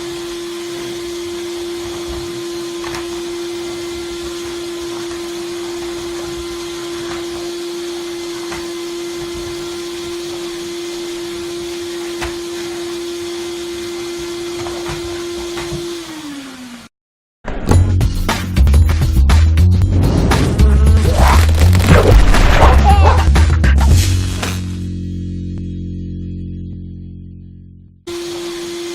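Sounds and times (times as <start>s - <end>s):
vacuum cleaner running: 0.0s - 16.9s, 20.0s - 24.8s, 28.1s - 28.9s
vacuum motor winding down: 0.0s - 16.9s, 20.4s - 23.4s, 28.1s - 28.9s.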